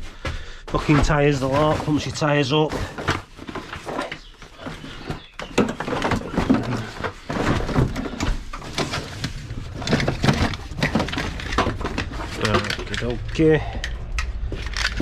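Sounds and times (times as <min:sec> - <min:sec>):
equipment being handled: 0:00.8 - 0:15.0.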